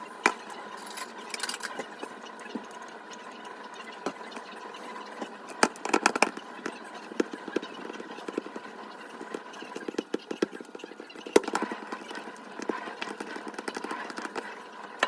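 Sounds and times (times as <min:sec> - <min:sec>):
utensils tapping dishes: 0:00.2 - 0:02.7.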